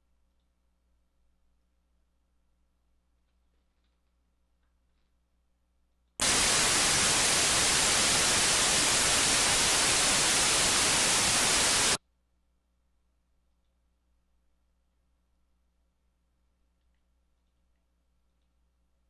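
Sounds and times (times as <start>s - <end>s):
white noise hiss: 6.2s - 12.0s.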